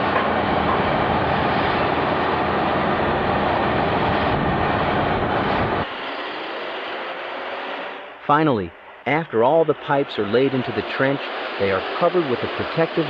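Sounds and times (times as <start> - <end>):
cement mixer truck engine running: 5.2 - 13.0.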